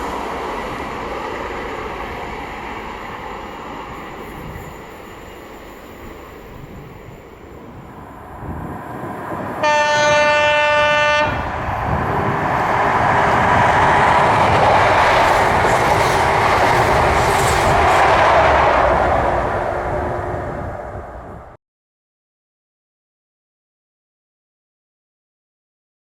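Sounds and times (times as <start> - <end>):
train passing wheel-on-rail noise: 0.0 - 21.6
train horn: 9.6 - 11.6.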